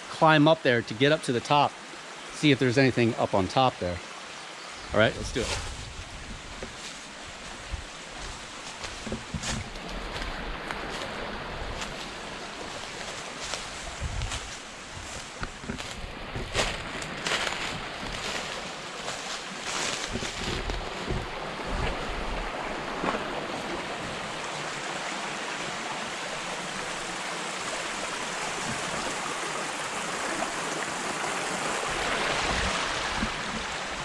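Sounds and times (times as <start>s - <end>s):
stream water rushing: 0.0s - 34.0s
footsteps: 5.3s - 22.3s.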